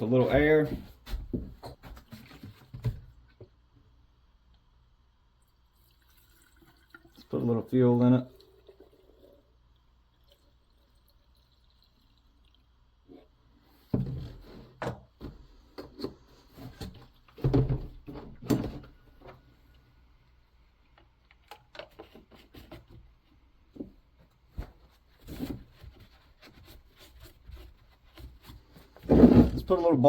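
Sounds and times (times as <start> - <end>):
knocks and clunks of handling: 13.9 - 19.5, 21.0 - 23.1.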